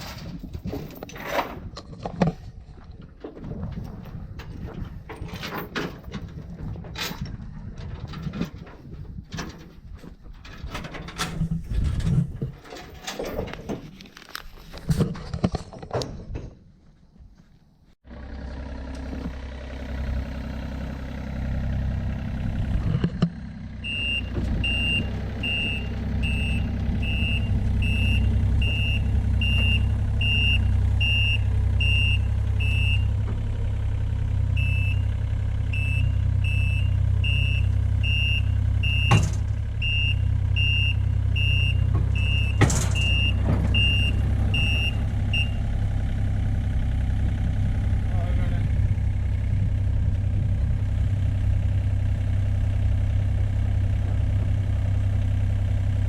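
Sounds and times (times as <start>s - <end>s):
diesel engine running: 18.0s - 56.0s
backup alarm beeping: 23.8s - 33.1s, 34.6s - 35.0s, 35.7s - 45.6s.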